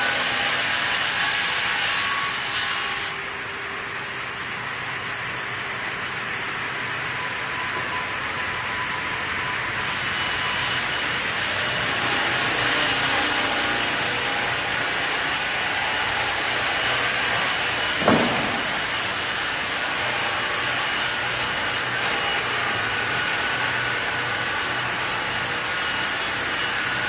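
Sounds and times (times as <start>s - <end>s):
sawmill machinery running: 0.0s - 27.0s
short knock: 18.0s - 18.8s.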